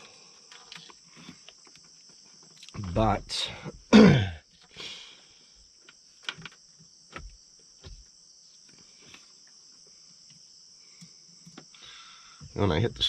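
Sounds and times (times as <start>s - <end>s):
crickets chirping: 0.0s - 13.0s.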